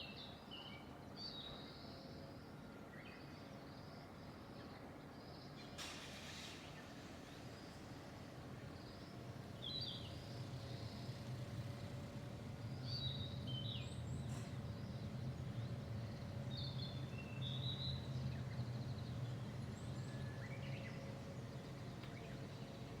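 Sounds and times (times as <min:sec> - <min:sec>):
birds chirping: 0:06.7 - 0:23.0.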